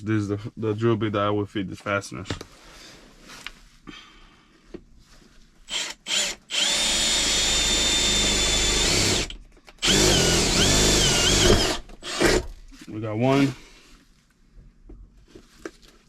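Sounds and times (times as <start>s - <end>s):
power drill whining: 5.7s - 12.5s.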